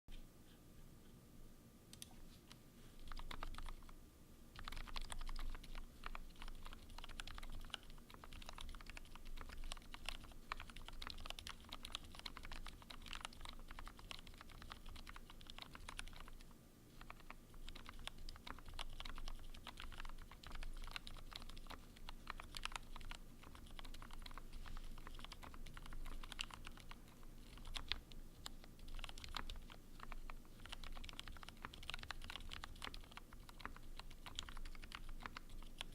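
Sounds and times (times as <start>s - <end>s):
mechanical keyboard typing: 3.0s - 3.9s, 4.6s - 35.9s.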